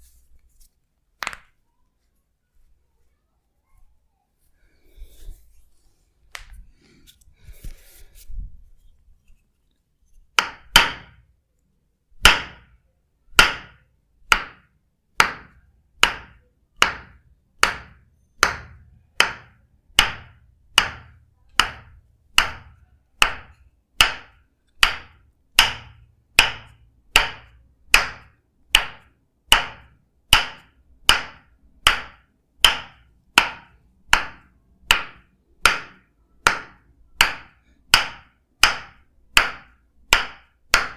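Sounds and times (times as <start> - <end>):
percussive massage strikes: 10.3 - 11.3, 12.2 - 12.7, 13.4 - 40.9.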